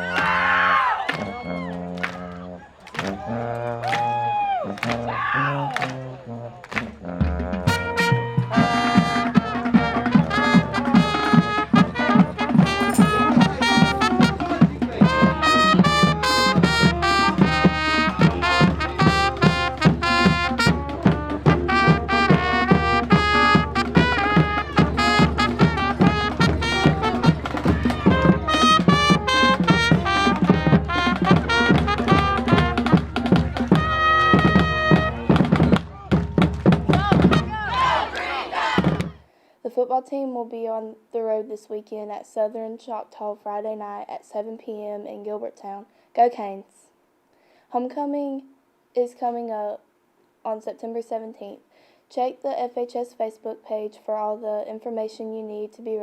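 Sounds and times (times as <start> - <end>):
instrumental music with quick beat: 1.1 - 4.2, 5.8 - 38.2.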